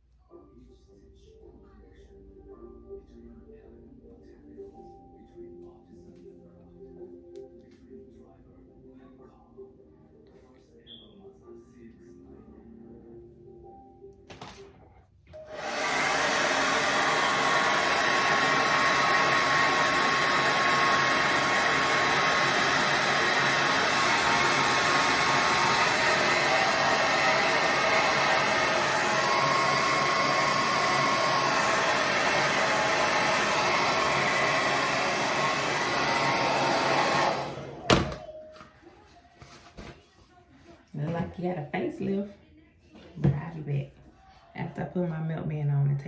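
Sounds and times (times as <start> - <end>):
hair dryer running: 15.4 - 38.3.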